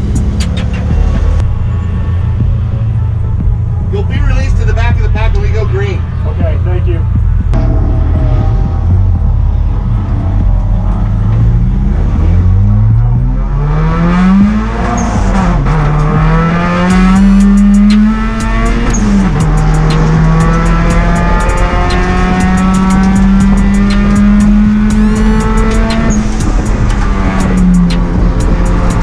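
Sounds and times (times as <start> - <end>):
race car engine accelerating: 7.6 - 29.0.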